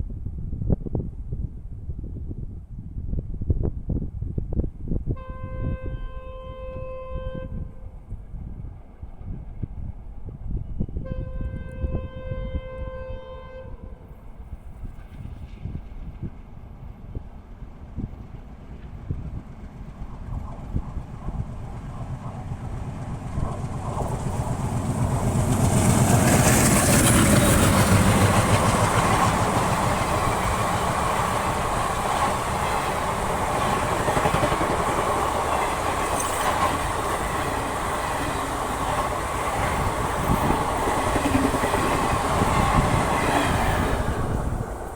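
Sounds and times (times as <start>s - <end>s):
diesel locomotives passing: 5.2s - 44.9s
train wheels rumbling on rails: 14.1s - 44.9s.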